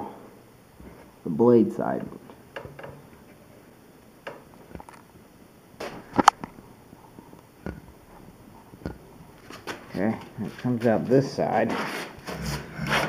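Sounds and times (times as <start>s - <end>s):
wire clicking and knocking on wood: 2.5s - 3.1s, 4.2s - 5.0s, 5.8s - 6.6s, 7.2s - 8.2s.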